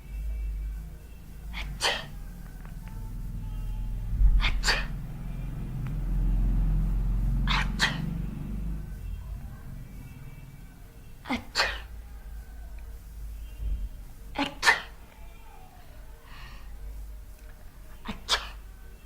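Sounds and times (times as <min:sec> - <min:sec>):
person sneezing: 0:01.5 - 0:02.2, 0:04.3 - 0:05.0, 0:07.5 - 0:08.1, 0:11.2 - 0:11.9, 0:14.4 - 0:15.0, 0:18.0 - 0:18.6
low rumble: 0:02.9 - 0:10.4.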